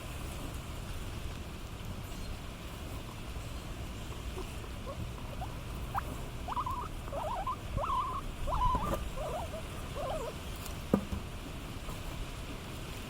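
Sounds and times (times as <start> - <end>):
guinea pigs squeaking: 4.3 - 10.4.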